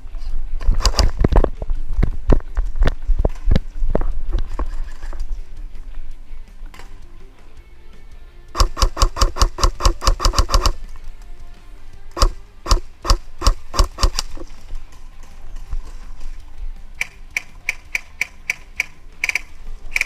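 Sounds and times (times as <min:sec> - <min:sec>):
airsoft rifle shots: 0:00.6 - 0:01.2, 0:08.5 - 0:10.8, 0:12.2 - 0:14.5.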